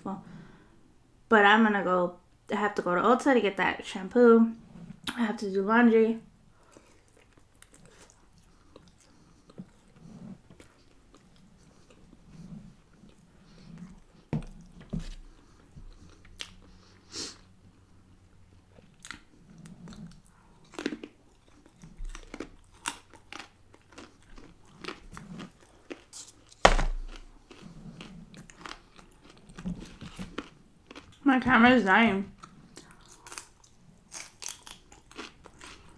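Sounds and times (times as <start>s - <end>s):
person chewing crunchy food: 6.6s - 17.4s, 18.7s - 31.2s, 32.4s - 35.9s.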